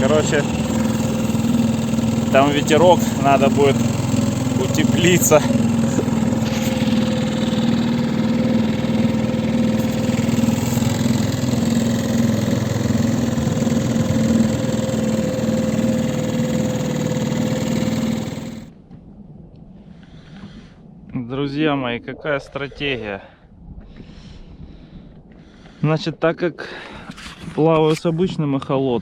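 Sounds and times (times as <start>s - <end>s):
outboard motor running: 0.0s - 19.0s.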